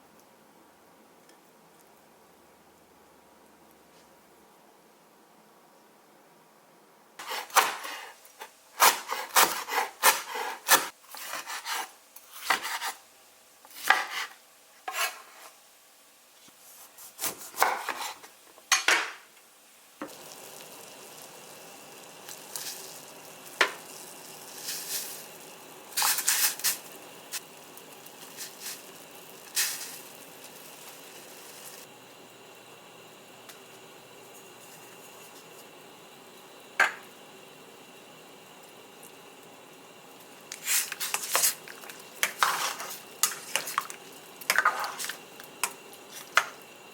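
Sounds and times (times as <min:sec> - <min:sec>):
steady hiss: 0:19.2 - 0:46.9.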